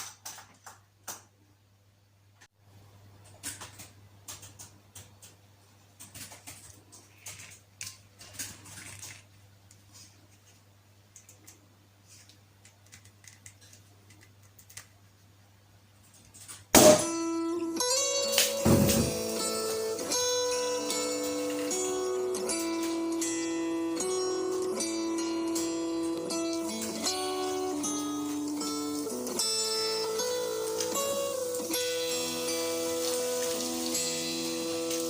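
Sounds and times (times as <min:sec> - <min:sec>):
low electrical hum: 0:00.0 - 0:35.0
kitchen clicks and scrapes: 0:06.0 - 0:10.1
guitar music: 0:16.8 - 0:35.0.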